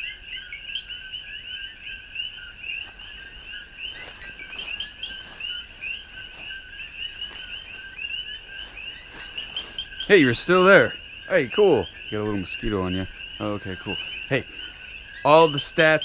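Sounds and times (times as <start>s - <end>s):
chorus of frogs chirping: 0.0s - 16.0s.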